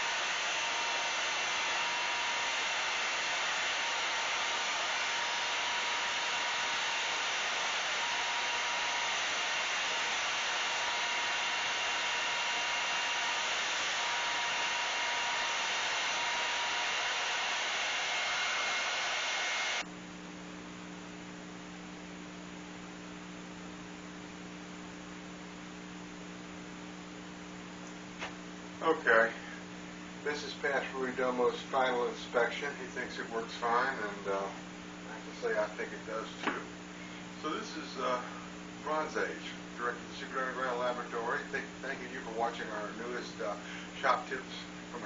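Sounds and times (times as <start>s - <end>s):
belt sander running: 0.0s - 19.9s.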